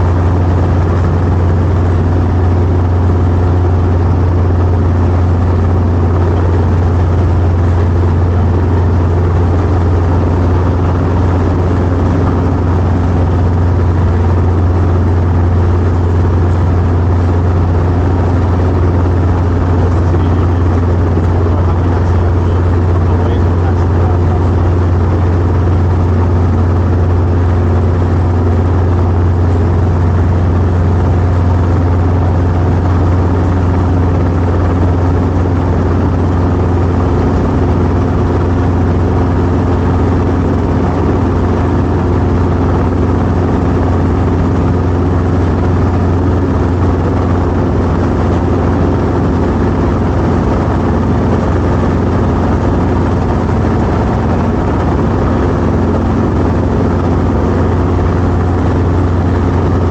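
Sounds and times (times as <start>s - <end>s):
helicopter engine and rotor drone: 0.0s - 59.9s.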